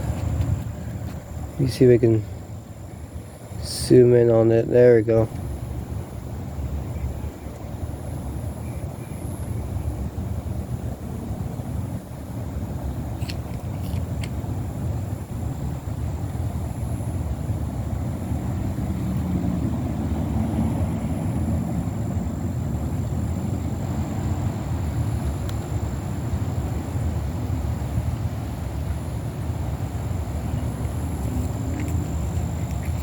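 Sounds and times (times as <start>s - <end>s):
low outdoor rumble: 0.0s - 33.0s.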